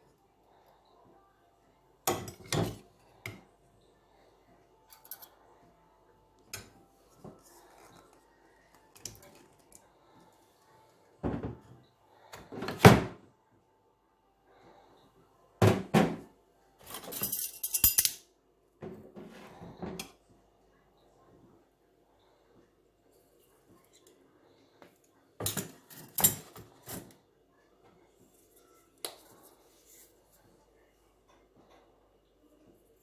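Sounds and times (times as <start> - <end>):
dishes and pans knocking and clinking: 11.2 - 11.7, 15.6 - 16.3.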